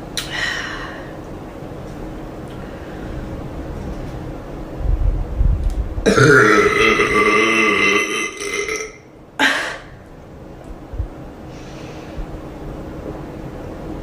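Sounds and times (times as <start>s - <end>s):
woman burping: 6.1s - 10.0s.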